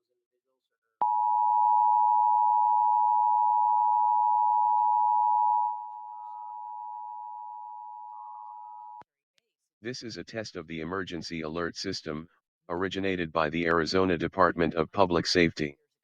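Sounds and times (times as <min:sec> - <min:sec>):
two-tone alert signal: 0:01.0 - 0:09.0.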